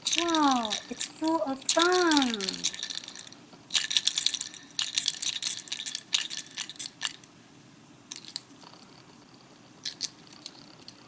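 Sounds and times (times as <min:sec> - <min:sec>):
plastic toy clicking and rattling: 0:00.0 - 0:07.3, 0:08.1 - 0:08.5, 0:09.8 - 0:11.0.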